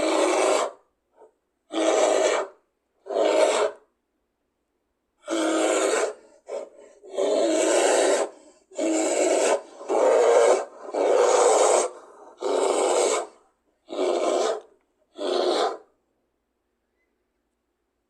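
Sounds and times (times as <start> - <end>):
harsh rasping roar-like breaths: 0.0 - 0.8, 5.2 - 15.8.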